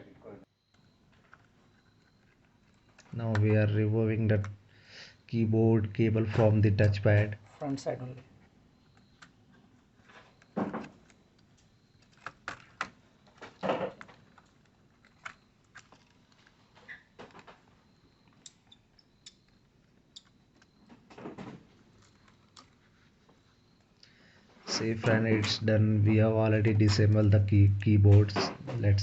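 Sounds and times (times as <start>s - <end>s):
laptop parts clicking and rattling: 0.7s - 3.2s, 8.8s - 23.3s.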